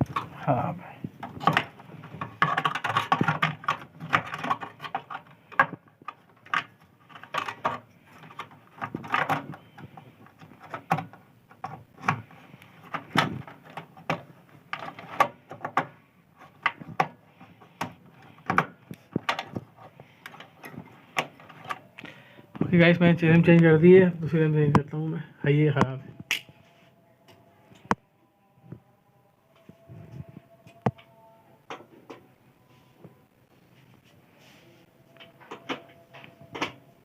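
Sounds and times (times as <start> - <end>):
hands clicking and knocking on computer parts: 1.1 - 22.1.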